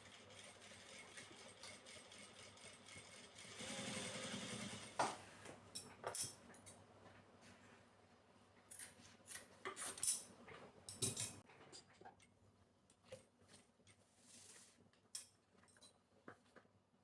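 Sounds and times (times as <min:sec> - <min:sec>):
sewing machine stitching: 0:00.0 - 0:05.1.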